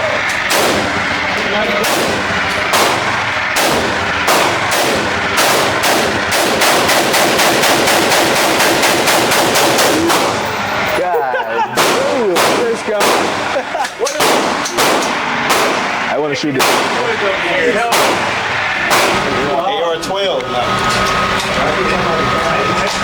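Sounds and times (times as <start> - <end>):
rapid gunshots: 0.0 - 10.8, 11.8 - 19.4
single gunshots: 0.4 - 1.1, 1.8 - 10.6, 11.8 - 13.6, 14.2 - 17.2, 17.9 - 19.3.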